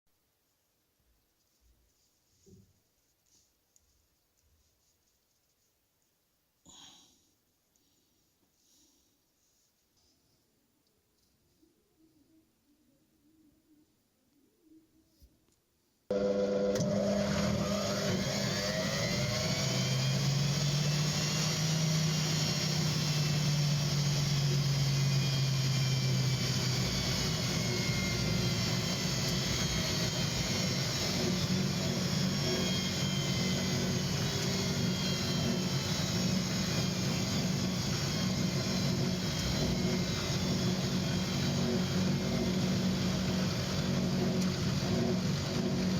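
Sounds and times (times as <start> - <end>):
washing machine spinning: 16.1 - 45.9.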